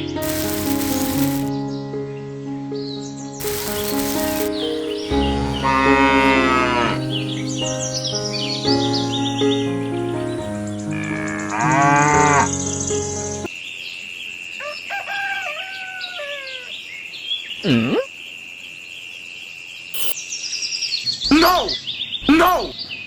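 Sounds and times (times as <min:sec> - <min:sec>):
music: 0:00.0 - 0:13.5
cow mooing: 0:05.6 - 0:07.1, 0:10.9 - 0:12.6
high-pitched tone: 0:20.0 - 0:20.2.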